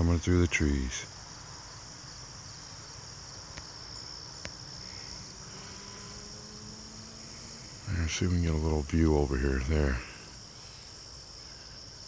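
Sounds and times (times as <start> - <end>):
crickets trilling: 0.0 - 12.0
faint ticks: 3.5 - 3.8, 4.4 - 5.8.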